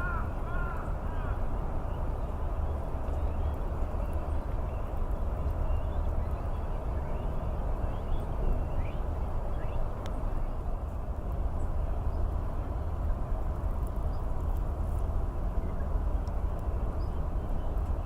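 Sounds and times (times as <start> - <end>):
low outdoor rumble and hiss: 0.0 - 18.0.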